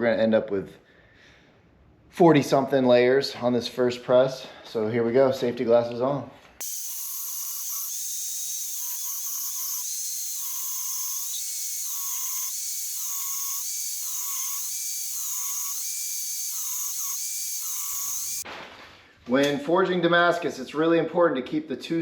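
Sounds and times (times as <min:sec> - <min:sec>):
power tool whining cutting steel: 0:06.6 - 0:18.4.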